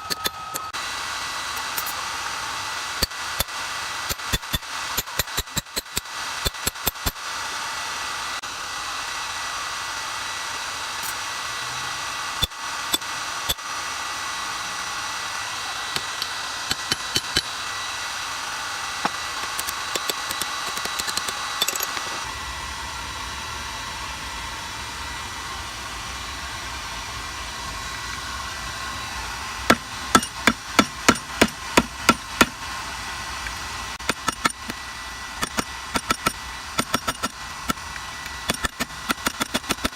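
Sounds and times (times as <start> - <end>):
hammer striking steel on anvil: 0.0 - 0.7, 16.0 - 17.5, 29.7 - 32.6, 34.0 - 34.8.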